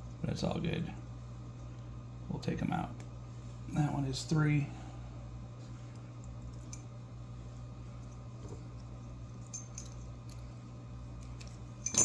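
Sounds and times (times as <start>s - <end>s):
steady low hum: 0.0s - 12.0s
small metal parts clicking: 11.3s - 12.0s.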